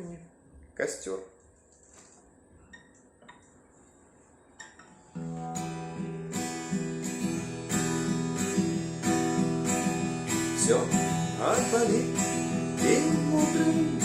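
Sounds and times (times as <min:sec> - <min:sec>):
acoustic guitar chord strumming: 0:04.6 - 0:14.0.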